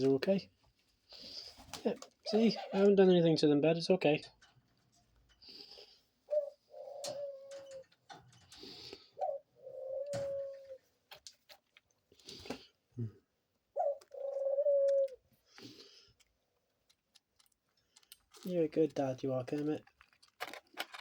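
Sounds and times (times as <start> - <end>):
dove cooing: 5.7 - 10.9, 13.7 - 15.3.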